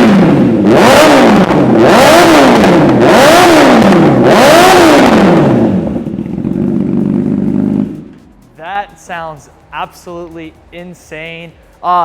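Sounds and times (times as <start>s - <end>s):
motorcycle engine revving: 0.0s - 8.4s
motorcycle engine idling: 4.8s - 8.5s.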